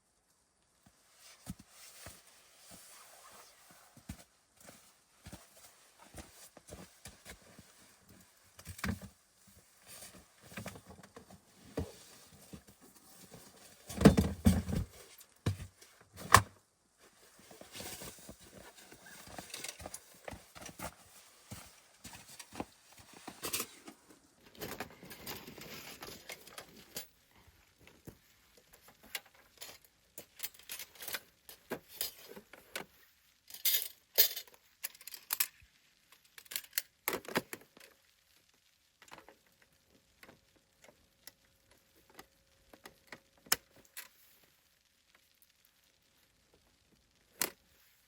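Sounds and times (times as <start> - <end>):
rustling: 0.8 - 34.3.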